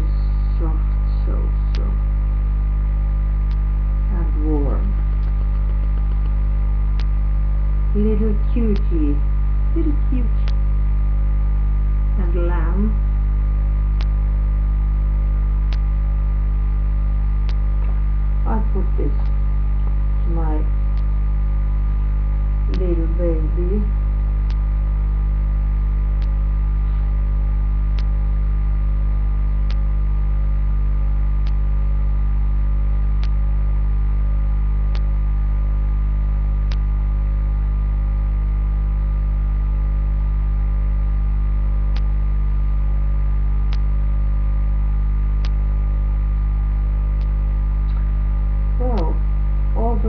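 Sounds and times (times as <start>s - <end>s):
electrical mains hum: 0.0s - 50.0s
faint sharp clicks: 14.0s - 14.2s, 15.6s - 15.9s, 17.4s - 18.0s, 20.9s - 21.2s, 24.4s - 24.6s, 26.2s - 26.4s, 27.9s - 28.2s, 29.6s - 29.9s, 31.4s - 31.6s, 34.9s - 35.1s, 36.7s - 36.9s, 41.9s - 42.2s, 43.7s - 43.9s, 45.4s - 45.6s, 47.2s - 48.1s.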